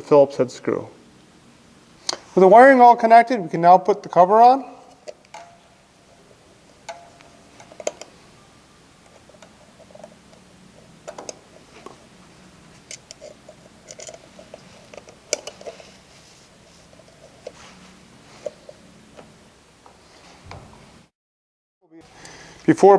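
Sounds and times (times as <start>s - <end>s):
faint steady hum: 0.0s - 21.1s, 21.9s - 22.9s.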